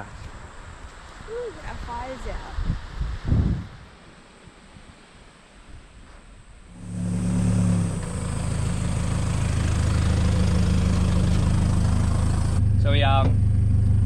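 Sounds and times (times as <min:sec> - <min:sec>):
vehicle engine running: 0:06.7 - 0:14.0.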